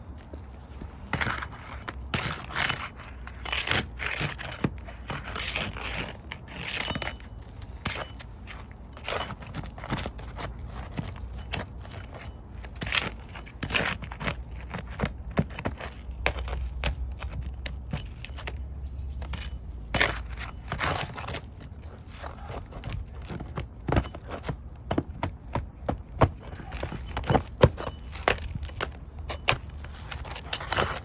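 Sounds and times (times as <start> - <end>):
tools scraping shingles: 0.3 - 31.0
shingles cracking: 20.0 - 31.0.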